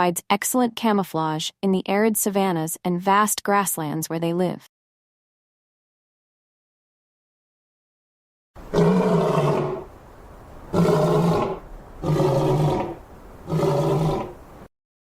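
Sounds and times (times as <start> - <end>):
lion roaring: 8.6 - 9.9, 10.6 - 14.7.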